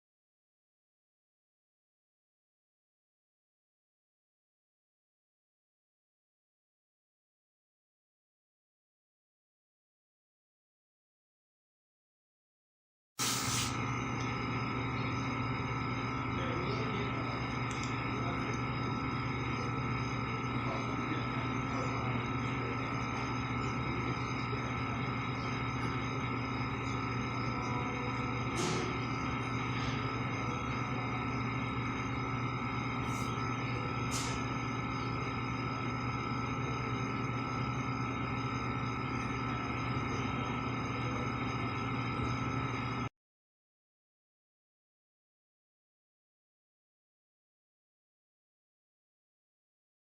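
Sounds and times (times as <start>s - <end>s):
steady humming drone: 13.7s - 43.1s.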